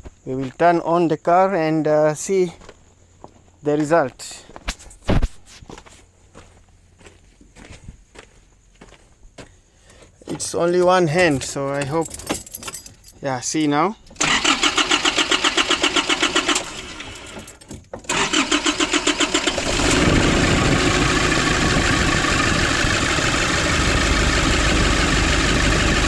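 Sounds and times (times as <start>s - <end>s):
diesel engine idling: 14.2s - 17.4s, 18.1s - 26.0s
starter motor cranking: 14.2s - 26.0s.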